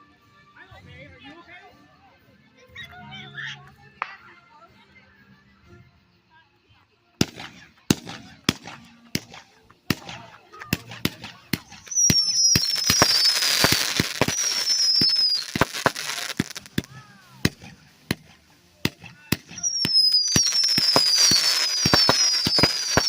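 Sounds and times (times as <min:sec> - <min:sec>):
crackling hiss of fireworks: 0:07.2 - 0:23.0
firecracker bangs: 0:07.2 - 0:23.0
high whistles falling in pitch: 0:11.7 - 0:16.8, 0:19.5 - 0:23.0.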